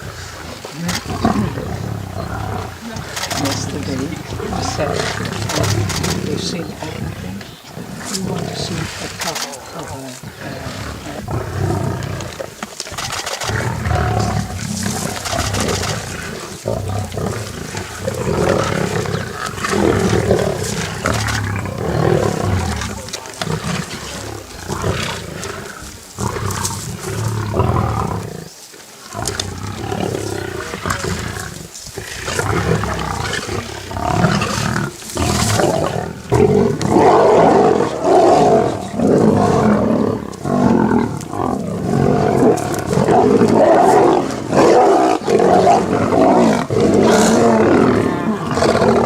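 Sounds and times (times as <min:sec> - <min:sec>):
lions roaring: 0:00.0 - 0:49.0.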